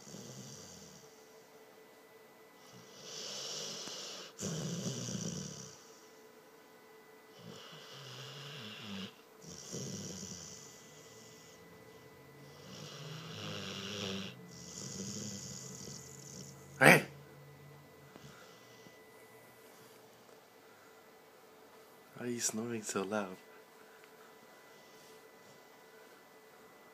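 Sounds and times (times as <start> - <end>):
dog snoring loudly: 0.0 - 1.1, 2.6 - 6.1, 7.3 - 11.7, 12.4 - 17.1.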